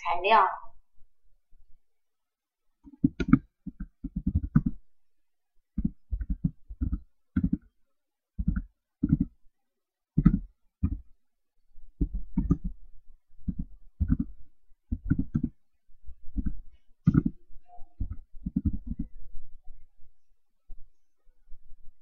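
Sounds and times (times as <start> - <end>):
keyboard typing: 2.9 - 4.8, 5.8 - 7.7, 8.4 - 9.4, 10.2 - 11.0, 12.0 - 12.8, 13.4 - 15.6, 16.3 - 19.2.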